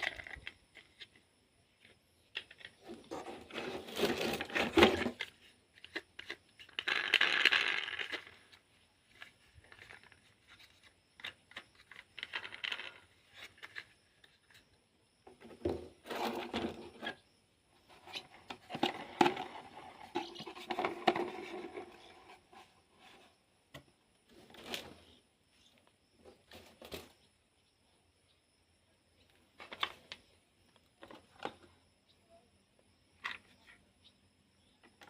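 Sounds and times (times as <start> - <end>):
plastic toy vehicles clattering: 0.0 - 1.2, 1.8 - 14.6, 15.3 - 17.2, 17.9 - 23.2.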